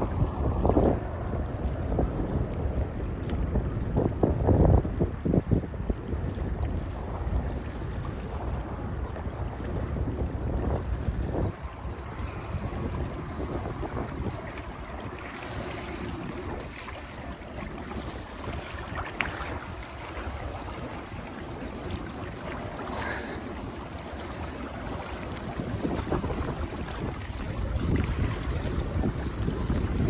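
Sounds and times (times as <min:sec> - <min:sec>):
ship engine rumble: 0:00.0 - 0:30.0
wind buffeting microphone: 0:00.0 - 0:30.0.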